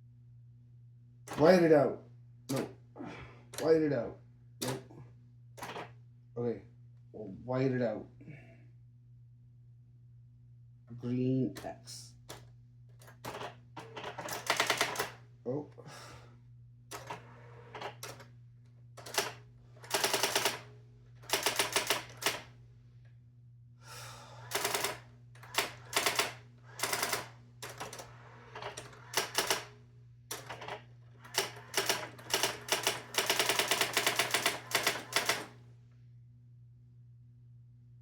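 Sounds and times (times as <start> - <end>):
steady low hum: 0.0 - 38.0
electronic typewriter printing: 1.3 - 1.8, 4.6 - 4.9, 5.6 - 5.9, 13.0 - 15.2, 16.9 - 18.2, 19.0 - 22.5, 24.5 - 35.6.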